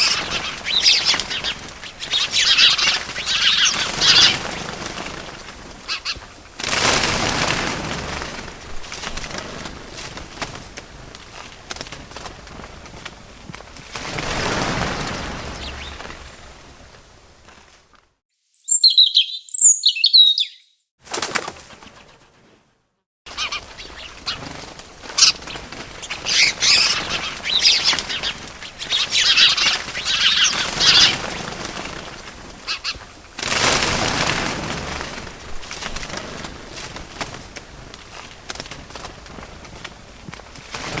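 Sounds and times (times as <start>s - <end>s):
birds chirping: 0.0s - 6.4s, 14.2s - 17.5s, 18.4s - 20.9s, 23.3s - 33.1s
wings flapping: 0.0s - 18.1s, 21.0s - 22.7s, 23.3s - 41.0s.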